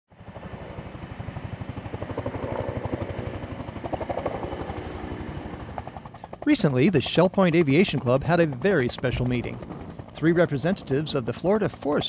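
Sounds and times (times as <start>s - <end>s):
helicopter engine running: 0.1s - 12.0s
helicopter rotor chopping: 0.1s - 12.0s.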